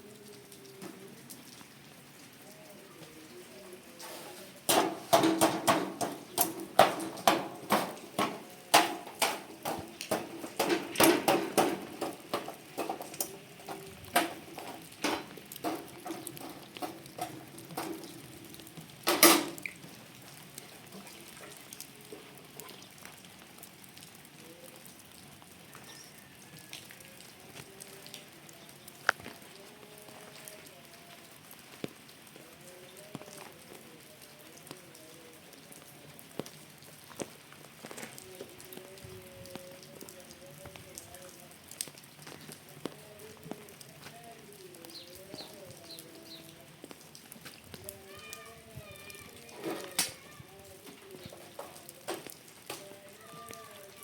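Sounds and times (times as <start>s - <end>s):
sharp knocks and taps: 4.7s - 18.2s.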